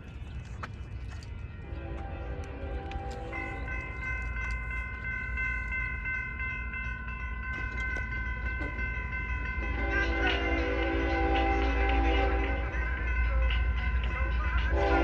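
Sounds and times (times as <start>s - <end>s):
train horn chord: 1.7s - 3.8s, 9.6s - 13.0s, 14.3s - 15.0s.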